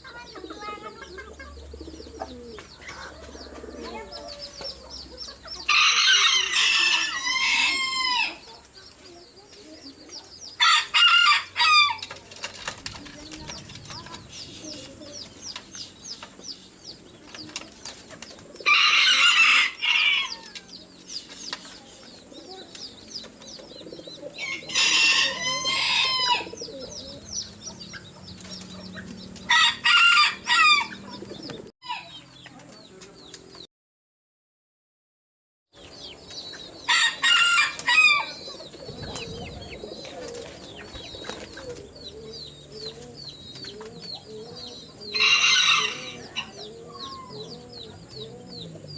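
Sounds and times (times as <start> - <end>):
roosters crowing: 1.0 - 8.6, 10.5 - 12.3, 18.4 - 21.2, 23.8 - 32.3, 36.0 - 48.9.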